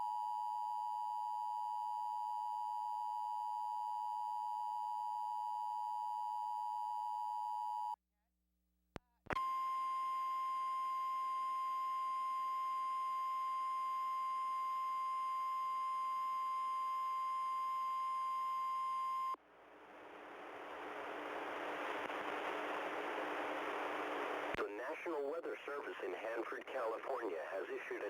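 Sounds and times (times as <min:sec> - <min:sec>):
radio hiss: 0:19.6 - 0:28.0.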